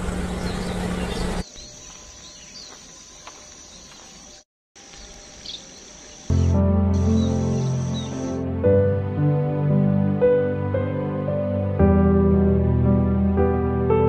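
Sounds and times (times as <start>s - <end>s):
high-pitched insect drone: 1.4s - 8.4s
background music: 6.3s - 14.0s.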